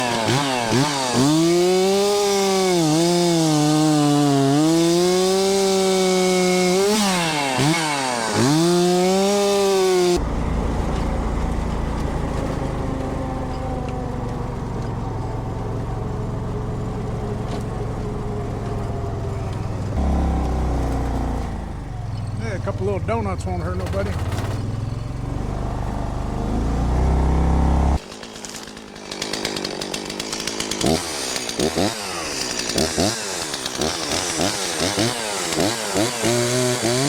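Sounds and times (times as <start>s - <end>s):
chainsaw running at high revs: 0.0s - 10.7s, 19.8s - 21.6s, 25.8s - 37.0s
low vehicle engine rumble: 10.2s - 28.0s.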